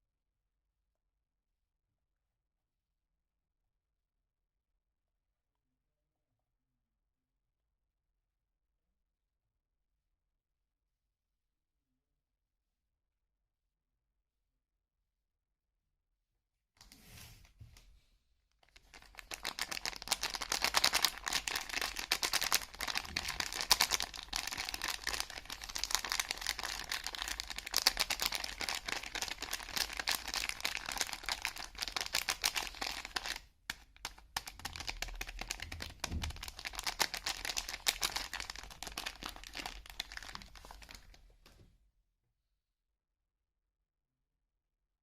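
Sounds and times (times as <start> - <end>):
wrapping crinkling and tearing: 18.6 - 41.2.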